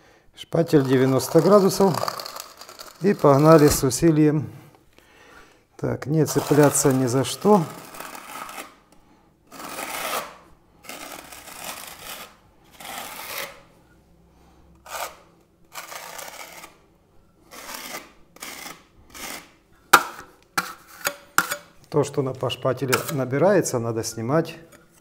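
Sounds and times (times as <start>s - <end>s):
steel spatula scraping plaster: 0.6s - 4.0s, 6.2s - 8.9s, 9.5s - 13.7s, 14.8s - 16.8s, 17.5s - 19.6s, 20.6s - 25.0s.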